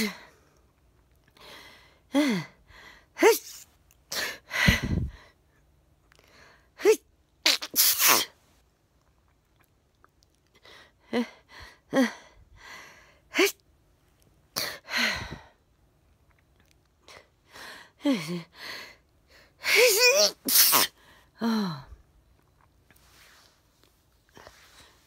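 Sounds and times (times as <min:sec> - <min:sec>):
gasping intakes of breath: 0:04.2 - 0:05.4
woman sneezing: 0:06.8 - 0:08.4, 0:19.6 - 0:21.0.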